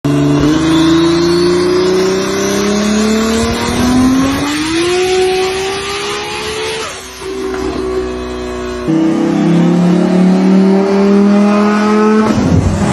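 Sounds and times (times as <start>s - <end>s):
car engine revving: 0.1s - 12.9s
high whistle: 0.4s - 3.4s.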